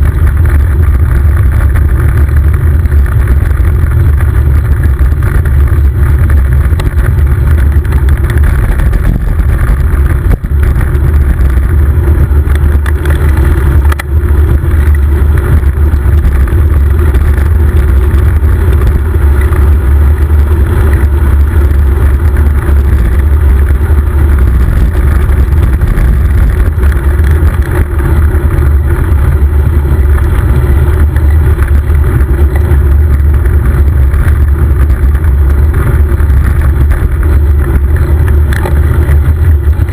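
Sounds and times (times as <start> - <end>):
wind rumble on microphone: 0.0 - 39.9.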